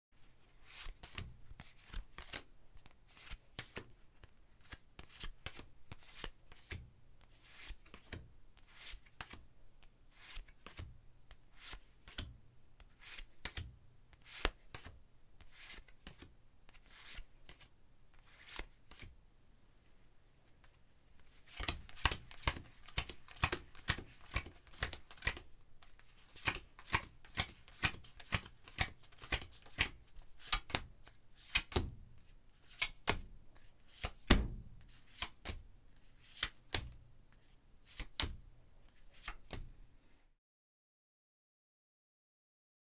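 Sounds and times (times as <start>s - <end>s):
playing cards snapping: 21.5s - 25.4s.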